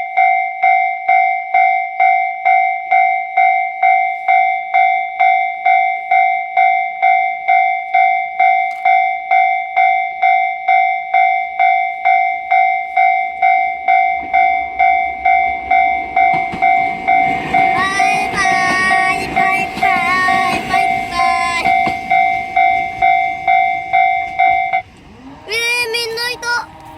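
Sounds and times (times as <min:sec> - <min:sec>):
level crossing warning bell: 0:00.0 - 0:26.9
train rumbling: 0:11.6 - 0:26.9.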